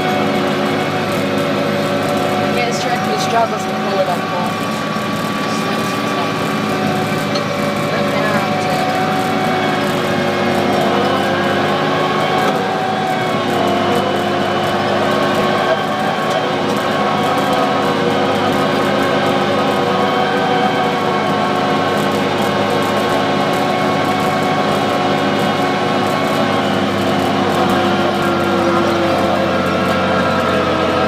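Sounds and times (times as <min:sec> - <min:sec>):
tractor engine under load: 0:00.0 - 0:31.0.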